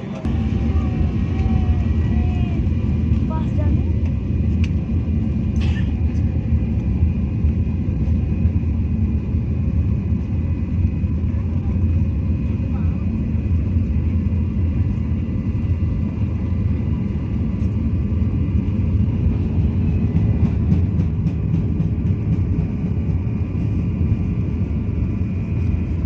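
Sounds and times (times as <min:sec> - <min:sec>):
vehicle rumble inside cabin: 0:00.0 - 0:26.0.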